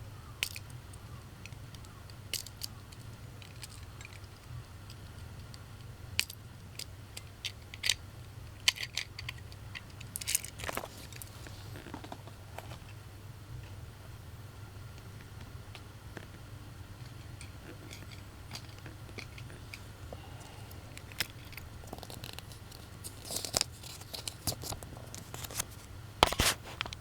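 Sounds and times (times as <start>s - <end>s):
low steady hum: 0.0s - 27.0s
small hard objects clicking and rattling: 0.4s - 0.7s, 1.4s - 5.6s, 6.2s - 12.8s, 17.0s - 19.8s, 20.4s - 25.7s.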